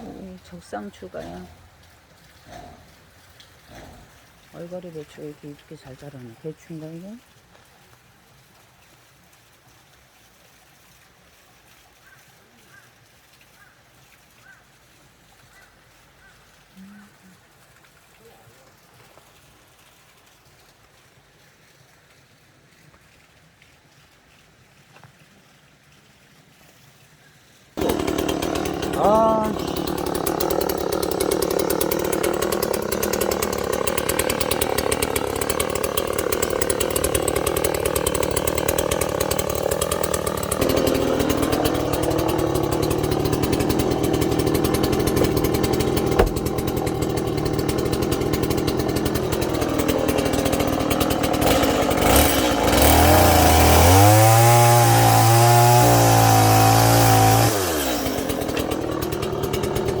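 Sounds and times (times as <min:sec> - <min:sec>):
small petrol engine running: 0:00.0 - 0:01.6, 0:27.8 - 1:00.0.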